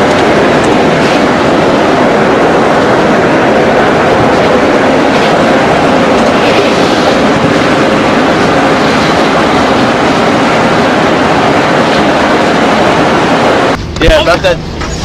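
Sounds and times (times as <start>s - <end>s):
vehicle road and wind noise: 0.0s - 15.0s.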